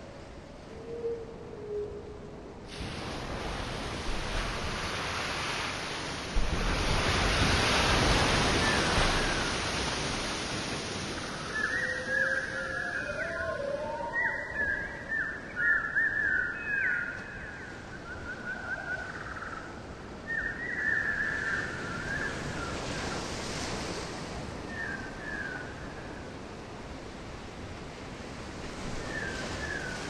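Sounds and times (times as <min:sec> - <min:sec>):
surf: 0:02.7 - 0:13.2.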